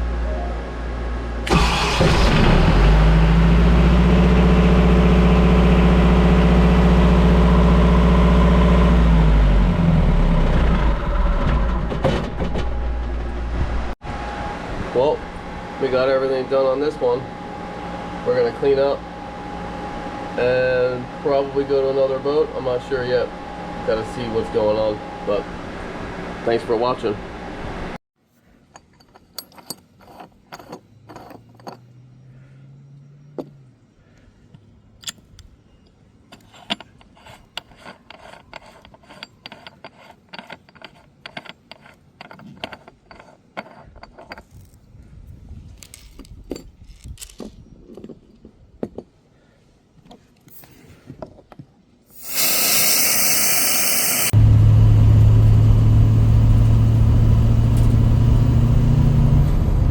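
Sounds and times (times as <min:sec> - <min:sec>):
loud steady hum: 0:00.0 - 0:08.8, 0:12.8 - 0:28.0
hand tools and metal parts clinking: 0:28.6 - 0:32.2, 0:34.2 - 0:44.9, 0:45.7 - 0:49.1.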